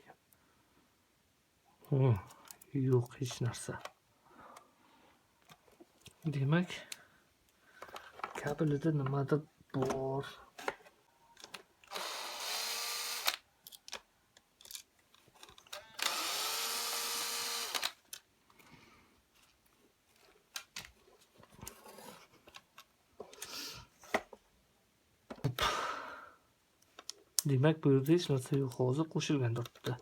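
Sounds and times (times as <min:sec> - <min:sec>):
hair dryer whirring: 0:16.0 - 0:17.9.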